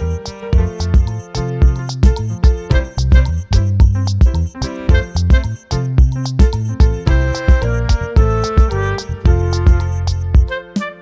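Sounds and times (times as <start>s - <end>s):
instrumental music with steady beat: 0.0s - 11.0s.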